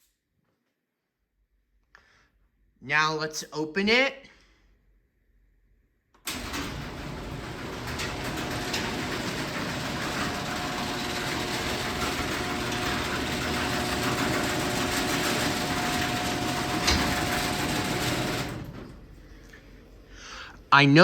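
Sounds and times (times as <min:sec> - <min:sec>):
garage door opener motor hum: 0:06.2 - 0:20.0.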